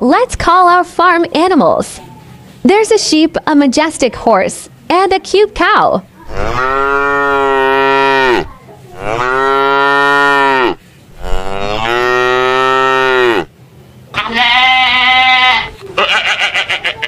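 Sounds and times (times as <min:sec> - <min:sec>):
cow mooing: 0:06.2 - 0:13.5.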